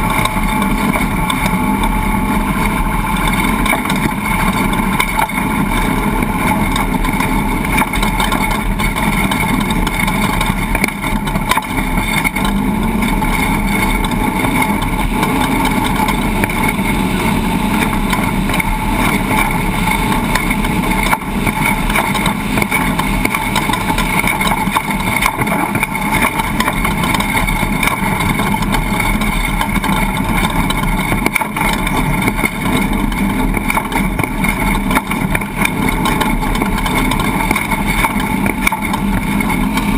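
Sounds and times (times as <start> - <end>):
engine running with steady hum: 0.0 - 39.9.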